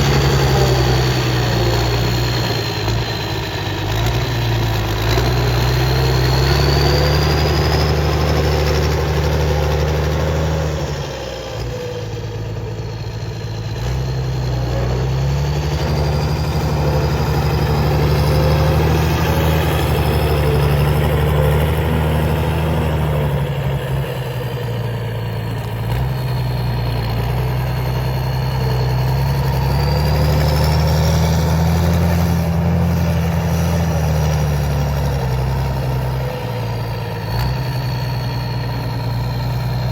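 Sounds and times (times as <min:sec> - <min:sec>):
diesel tractor engine working hard: 0:00.0 - 0:39.9.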